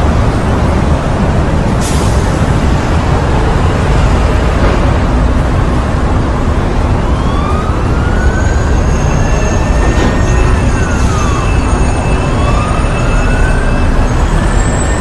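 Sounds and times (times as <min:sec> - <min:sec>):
road traffic rumble: 0:00.0 - 0:15.0
siren rising in pitch: 0:06.8 - 0:15.0.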